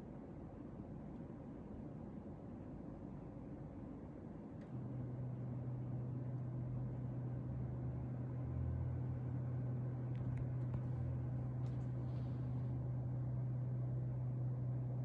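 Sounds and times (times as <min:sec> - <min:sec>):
air conditioner humming: 0:09.0 - 0:15.0.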